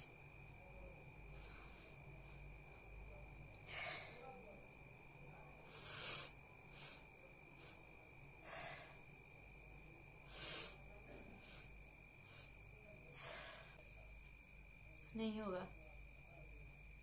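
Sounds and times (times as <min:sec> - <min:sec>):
woman sniffing sharply: 0:05.7 - 0:07.0, 0:10.3 - 0:10.8.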